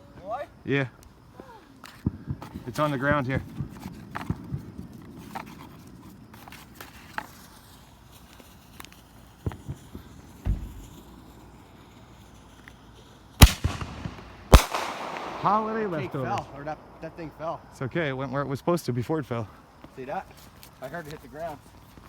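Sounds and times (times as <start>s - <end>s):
firework bangs: 7.6s - 17.3s
firework launch thump: 9.4s - 11.3s.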